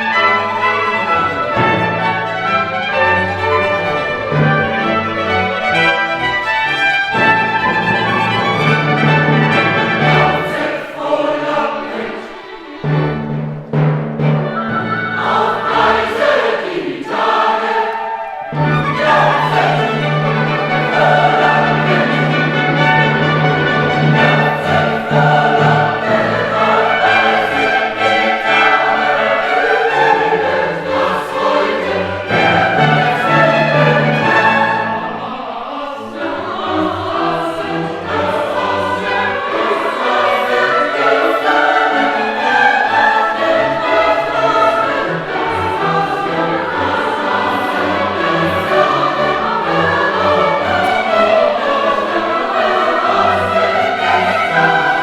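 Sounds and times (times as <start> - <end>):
instrumental accompaniment: 0.0 - 35.6
choir singing classical music: 0.0 - 55.0.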